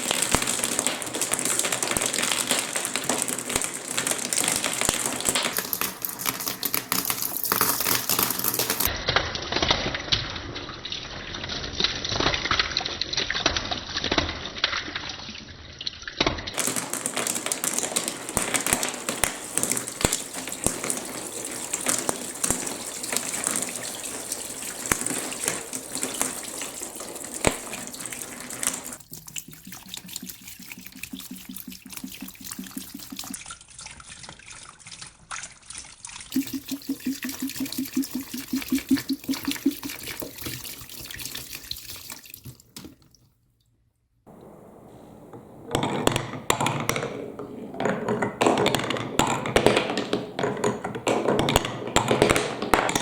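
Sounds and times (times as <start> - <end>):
water gushing down marble run: 0.0 - 15.3, 16.5 - 42.9.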